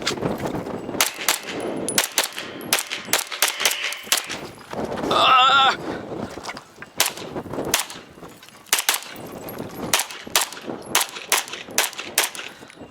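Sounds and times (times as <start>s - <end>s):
pistol shots: 1.0s - 4.4s, 7.0s - 8.0s, 8.7s - 9.2s, 9.9s - 12.5s.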